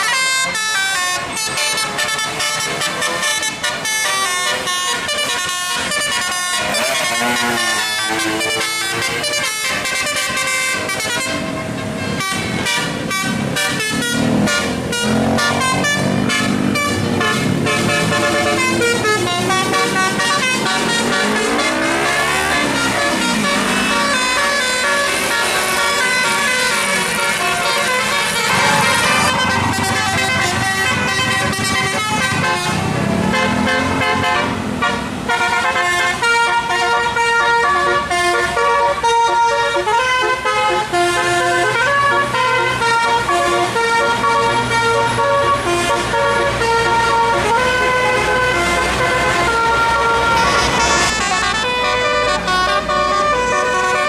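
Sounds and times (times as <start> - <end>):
musical air horn melody: 0.0 - 54.0
vehicle engine running: 12.1 - 35.4.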